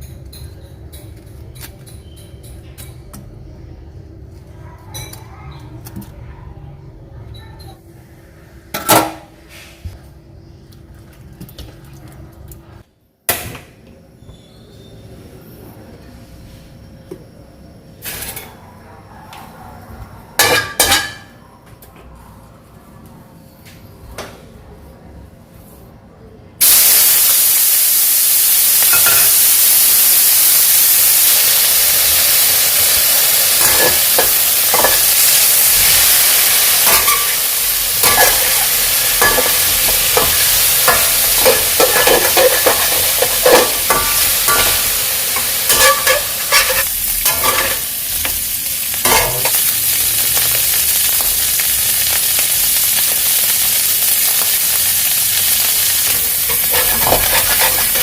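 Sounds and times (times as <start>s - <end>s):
food sizzling in a pan: 26.6s - 58.0s
spatula scraping a pan: 36.8s - 37.4s, 38.0s - 47.9s, 56.5s - 58.0s.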